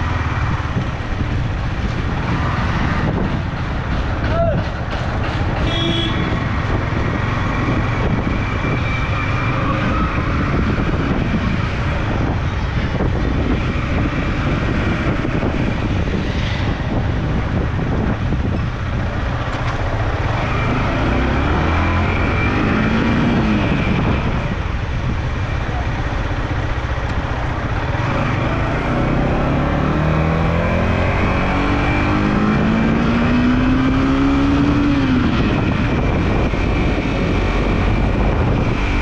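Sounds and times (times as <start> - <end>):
passing vehicles: 0.0 - 39.0
wind and road noise: 0.0 - 39.0
motorcycle engine: 5.0 - 39.0.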